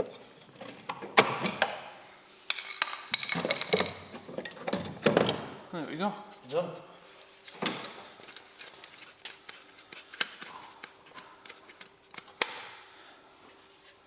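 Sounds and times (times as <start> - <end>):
tools and parts clicking: 2.5 - 4.9.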